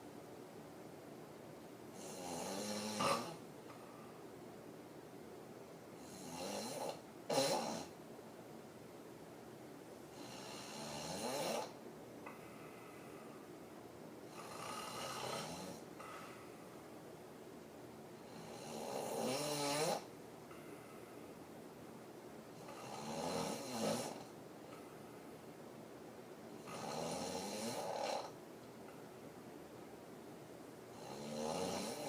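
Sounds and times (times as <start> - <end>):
woman snoring: 2.0 - 3.4, 6.0 - 7.9, 10.1 - 11.8, 14.3 - 16.3, 18.2 - 20.1, 22.6 - 24.3, 26.6 - 28.4, 30.9 - 32.0.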